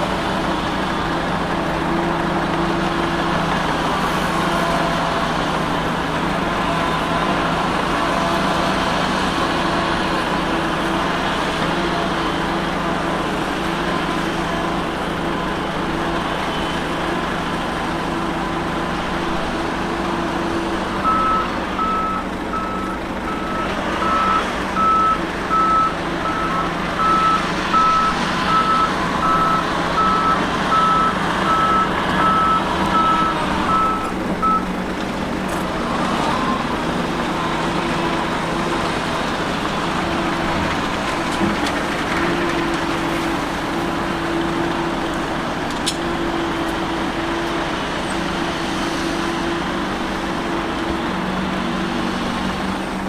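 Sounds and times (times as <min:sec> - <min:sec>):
diesel engine running: 0:00.0 - 0:53.0
reversing alarm beeping: 0:21.0 - 0:34.7.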